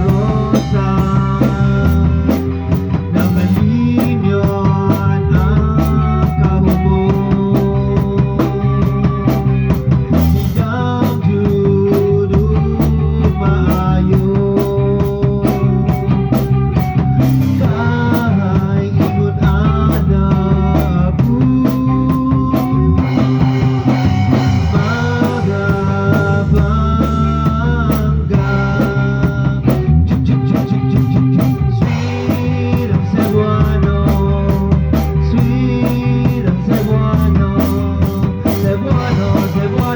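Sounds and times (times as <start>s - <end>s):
drum kit beat: 0.0s - 39.9s
held instrumental notes: 22.2s - 27.7s.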